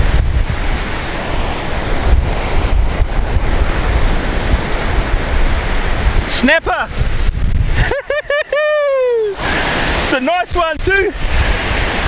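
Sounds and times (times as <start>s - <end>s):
surf breaking on beach: 0.0s - 12.0s
wind buffeting microphone: 0.0s - 12.0s.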